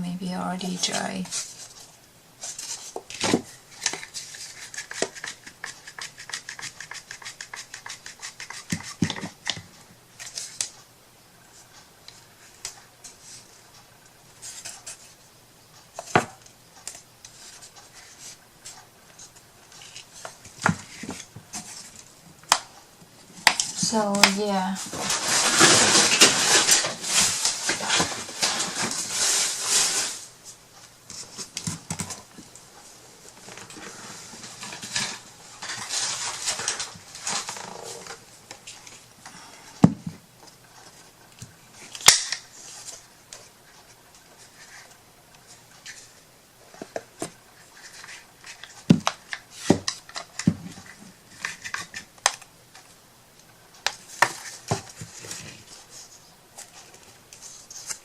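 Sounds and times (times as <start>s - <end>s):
rustling and scraping on tabletop: 24.8s - 30.3s.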